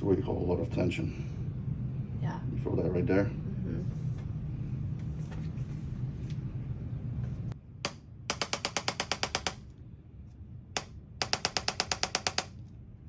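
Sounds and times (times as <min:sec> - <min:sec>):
low steady hum: 0:00.0 - 0:13.0
rapid mechanical taps: 0:07.8 - 0:09.7, 0:10.8 - 0:12.6.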